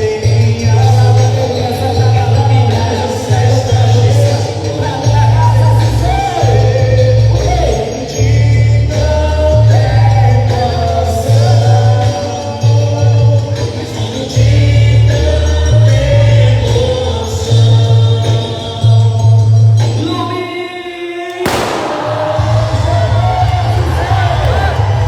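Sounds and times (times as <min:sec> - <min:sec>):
voices singing over bass beat: 0:00.0 - 0:25.0
loud burst of noise: 0:21.5 - 0:23.0.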